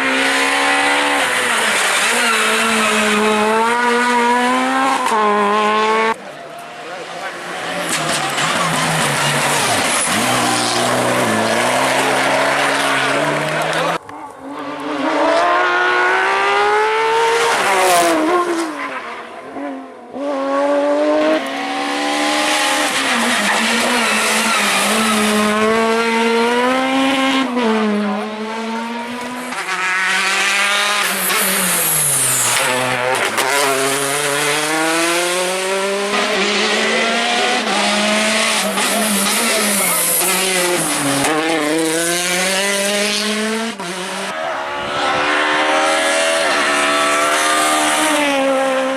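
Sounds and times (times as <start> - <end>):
rally car engines revving: 0.0 - 48.9.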